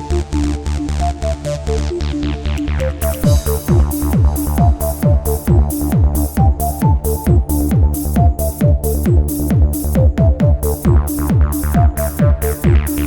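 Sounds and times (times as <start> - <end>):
electronic dance music: 0.0 - 13.0.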